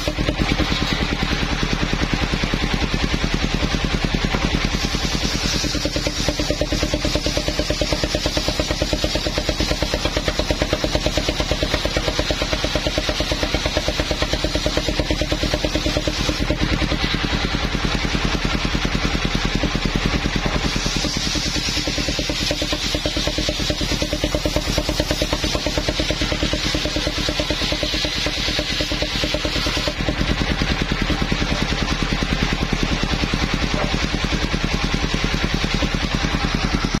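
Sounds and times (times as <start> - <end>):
sawmill engine running: 0.0 - 37.0.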